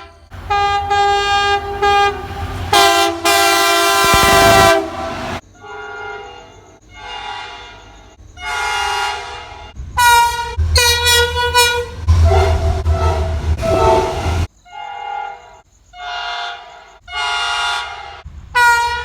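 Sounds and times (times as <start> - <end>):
low engine rumble: 0.0 - 5.4, 9.7 - 14.5
train horn blasts: 0.0 - 19.0.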